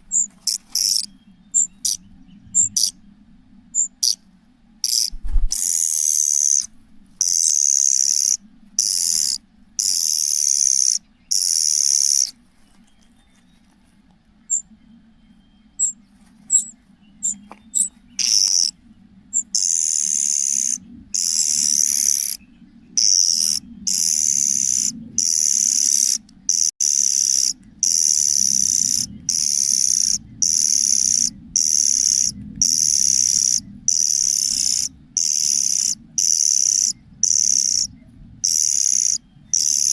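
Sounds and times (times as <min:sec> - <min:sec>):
faint low hum: 0:00.0 - 0:39.9
young bird hissing begging calls: 0:04.9 - 0:12.3, 0:19.6 - 0:22.4, 0:23.0 - 0:39.9.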